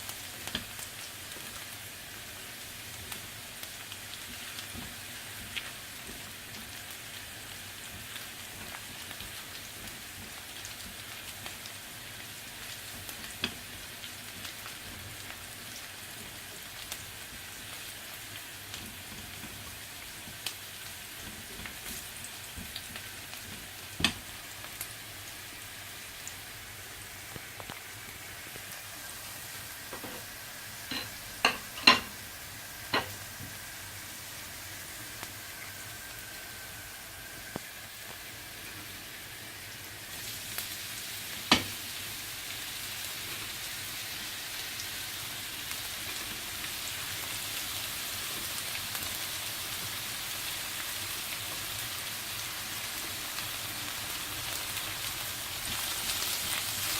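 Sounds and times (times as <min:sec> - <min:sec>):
food sizzling in a skillet: 0:00.0 - 0:56.9
knocks on a pan: 0:41.5 - 0:41.7.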